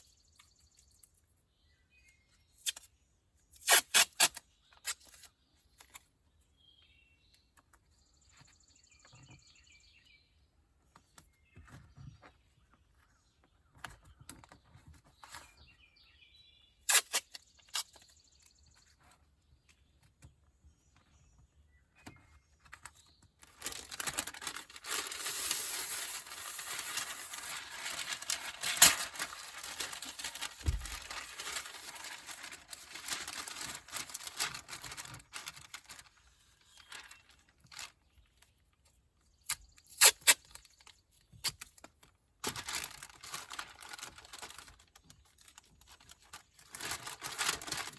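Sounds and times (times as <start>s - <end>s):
masking tape pulled and torn: 2.6s - 2.9s, 3.5s - 6.0s, 16.8s - 18.1s, 23.4s - 35.9s, 39.4s - 40.8s.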